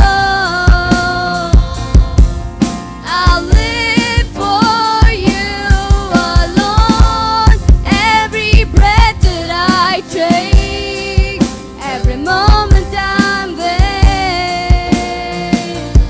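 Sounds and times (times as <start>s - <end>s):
person singing: 0.0s - 2.4s
band with drum kit: 0.0s - 16.0s.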